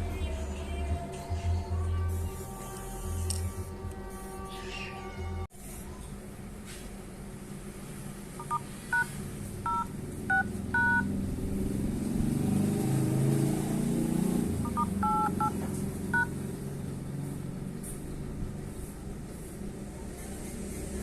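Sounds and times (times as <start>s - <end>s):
dial-pad tone beeps: 8.4s - 9.1s, 9.7s - 11.1s, 14.6s - 16.3s.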